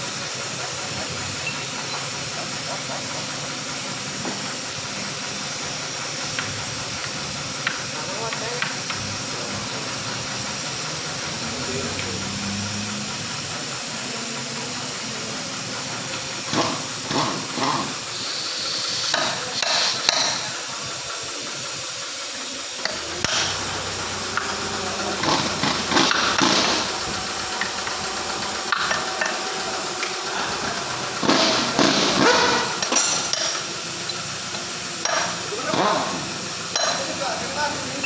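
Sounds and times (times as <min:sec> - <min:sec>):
steady hiss: 0:18.0 - 0:31.9.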